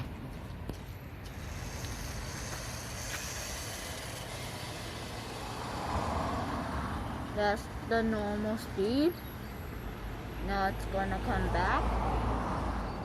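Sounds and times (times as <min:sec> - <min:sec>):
toy truck motor whine: 0:01.3 - 0:06.5.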